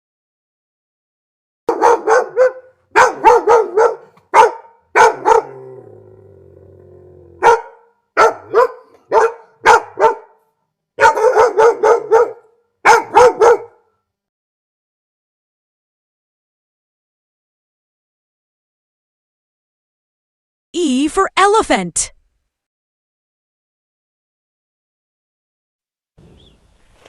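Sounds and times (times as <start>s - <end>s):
dog barking: 1.7s - 5.7s, 7.4s - 13.9s.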